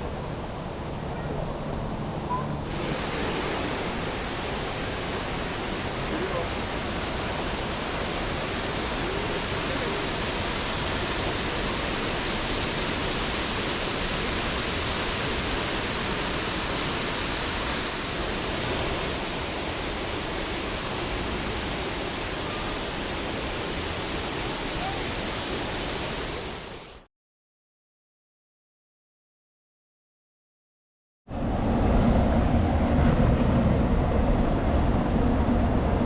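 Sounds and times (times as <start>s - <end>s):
waterfall rushing: 2.6s - 27.0s.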